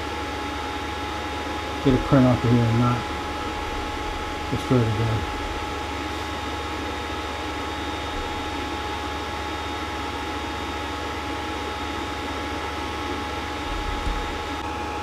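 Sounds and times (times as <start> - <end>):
printer whining tones: 1.2 - 10.1
low hum: 1.8 - 6.8.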